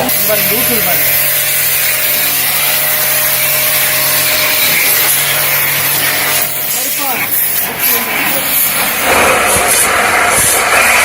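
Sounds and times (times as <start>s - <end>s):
pressure washer motor hum: 0.0s - 11.0s
water jet hissing: 3.0s - 11.0s.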